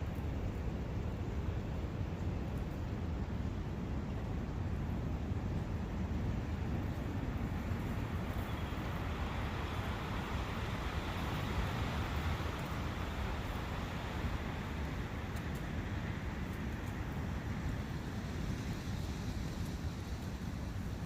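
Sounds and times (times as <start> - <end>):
wind through forest: 0.0 - 21.0
brook flowing: 6.6 - 16.8.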